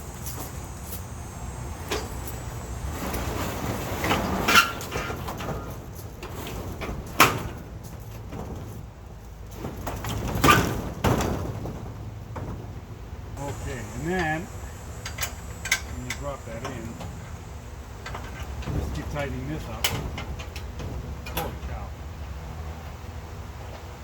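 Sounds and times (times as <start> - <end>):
metal latch scraping: 13.5 - 21.8
metal latch clacks: 19.8 - 21.8.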